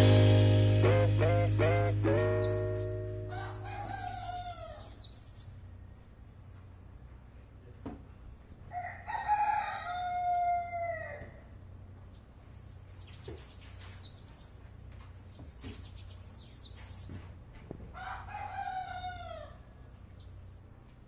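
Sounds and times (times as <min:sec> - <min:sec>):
small bird high rapid trills: 0:00.8 - 0:06.4
rooster crowing: 0:01.0 - 0:05.0, 0:08.7 - 0:11.4, 0:18.0 - 0:19.7.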